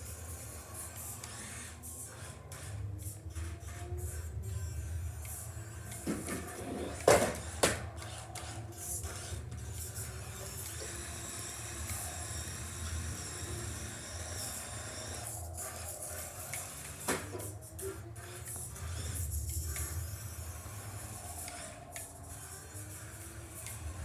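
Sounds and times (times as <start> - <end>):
toy car motor whirring: 0.0 - 24.0.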